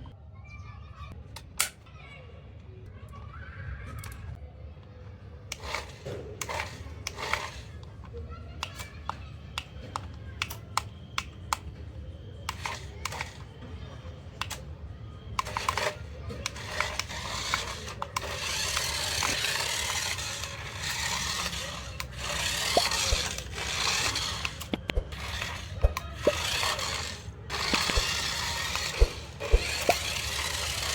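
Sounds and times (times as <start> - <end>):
plastic parts clicking: 1.4 - 1.8, 5.5 - 11.7, 12.4 - 13.6, 14.3 - 14.7, 15.3 - 30.9.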